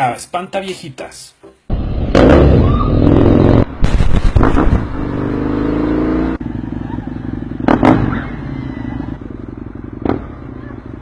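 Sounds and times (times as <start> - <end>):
exhaust cracks: 2.1 - 5.1
motorcycle engine revving and idling: 4.4 - 11.0.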